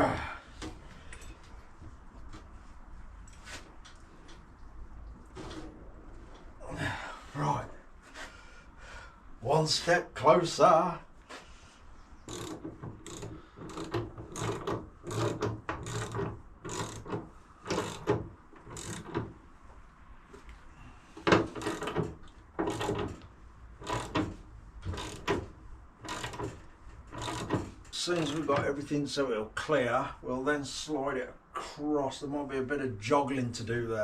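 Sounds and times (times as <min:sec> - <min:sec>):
mechanical ratchet clicking: 0:12.3 - 0:19.2, 0:23.8 - 0:24.3, 0:24.9 - 0:25.4, 0:26.0 - 0:26.6, 0:27.2 - 0:28.4.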